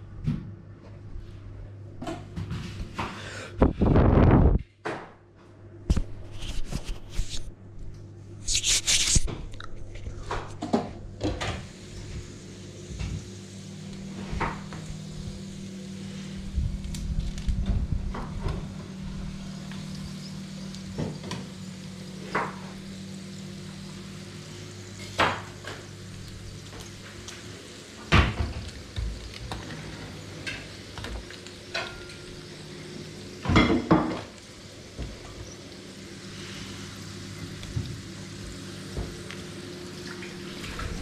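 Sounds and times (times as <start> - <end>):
steady low hum: 5.5 - 28.0
fat sizzling: 8.4 - 9.3, 11.6 - 17.6, 18.8 - 41.0.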